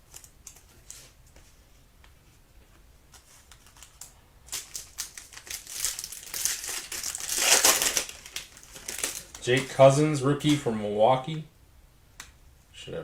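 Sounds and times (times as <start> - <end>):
foil wrapper crinkling and tearing: 3.5 - 9.9.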